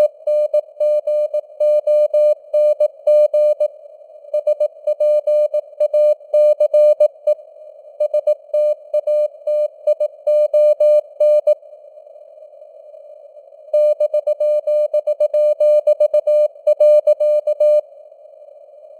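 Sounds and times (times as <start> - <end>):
morse code tone: 4.4 - 7.1, 8.0 - 11.6, 13.8 - 17.8.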